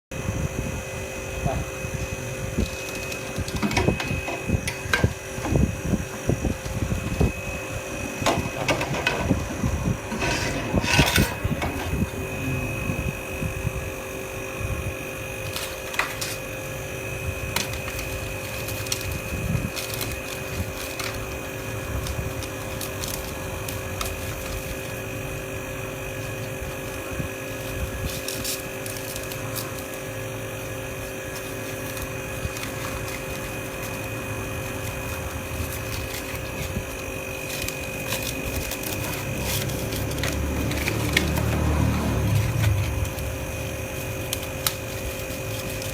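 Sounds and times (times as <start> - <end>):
steady electrical hum: 0.1 - 45.9.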